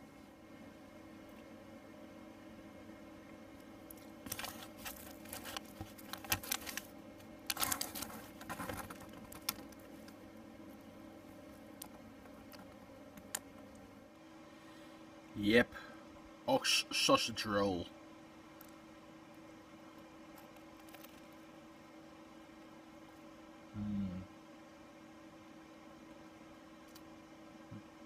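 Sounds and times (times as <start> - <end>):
steady low hum: 0.0 - 28.0
small objects clattering and rustling: 4.2 - 10.0.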